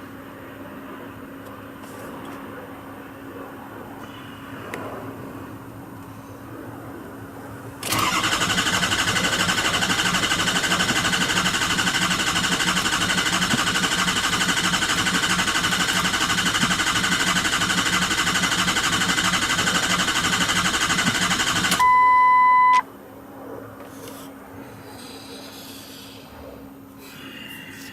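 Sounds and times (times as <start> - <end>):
diesel engine starter cranking: 7.8 - 21.9
loud high beep: 21.8 - 22.8.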